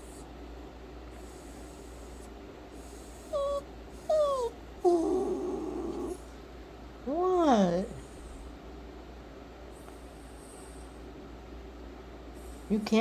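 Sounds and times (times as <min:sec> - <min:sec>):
dog whining: 0:03.1 - 0:06.3.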